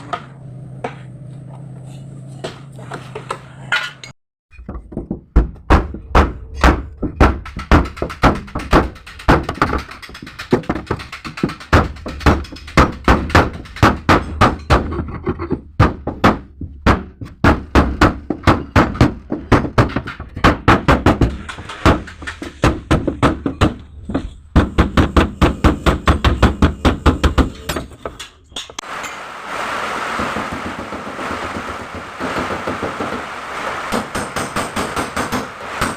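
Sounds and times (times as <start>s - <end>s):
hammer on sheet metal: 33.9s - 35.9s.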